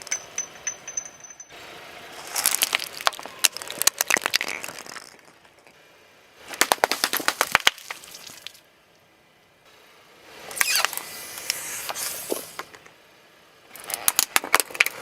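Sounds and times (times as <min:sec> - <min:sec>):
tyre crushing brittle things: 0:02.2 - 0:05.6.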